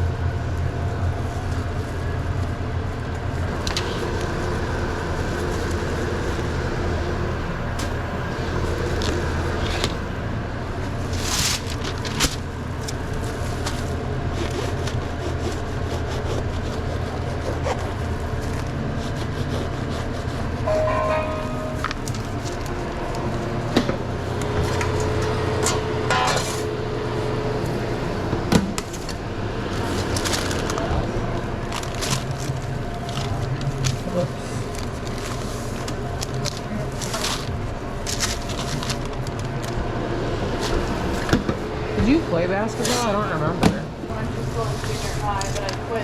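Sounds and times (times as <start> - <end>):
kitchen equipment hum: 3.3 - 46.0
electronic tone: 20.7 - 22.4.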